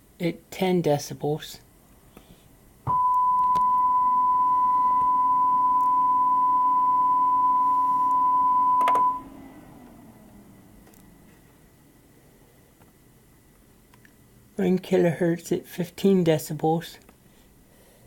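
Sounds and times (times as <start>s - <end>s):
sine test tone: 2.9s - 9.9s.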